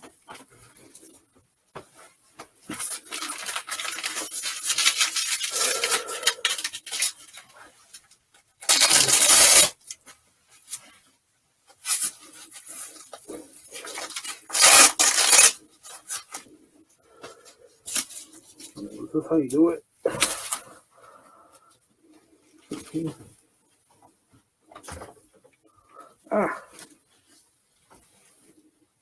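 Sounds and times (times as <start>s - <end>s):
costume pieces rustling and scraping: 0.0s - 19.1s, 26.7s - 29.0s.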